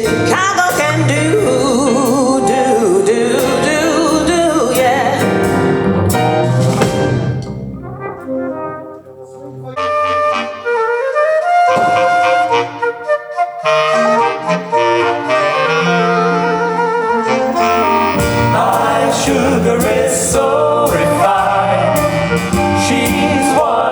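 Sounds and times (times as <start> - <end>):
big band horns playing blues: 0.0 - 10.8, 11.7 - 23.9
saxophone section long notes: 9.7 - 10.7, 11.9 - 20.0.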